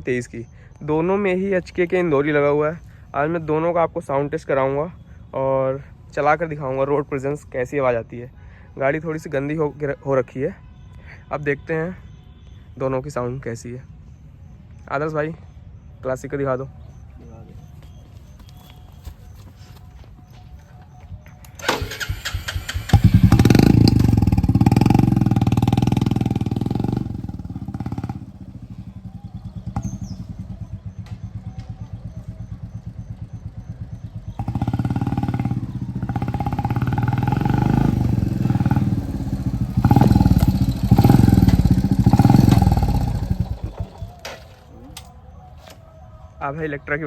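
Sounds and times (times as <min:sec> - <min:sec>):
motorcycle engine revving: 0:21.5 - 0:45.1.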